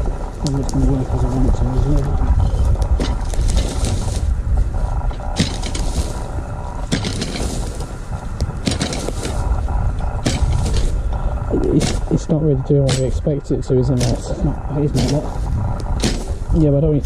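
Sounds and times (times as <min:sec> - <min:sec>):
steady low rumble: 0:00.0 - 0:17.0
trolley scraping through leaf litter: 0:03.1 - 0:04.9.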